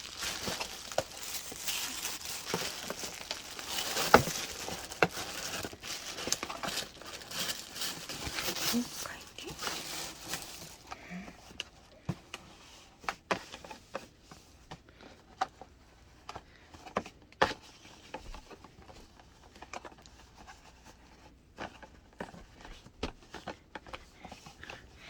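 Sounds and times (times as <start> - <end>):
shopping bag being pawed: 0.0 - 10.8.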